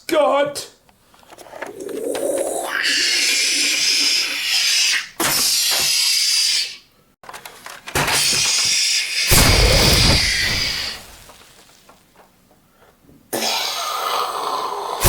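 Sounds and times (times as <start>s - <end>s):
deep boom: 9.3s - 11.2s
loud hissing rush: 9.3s - 11.4s.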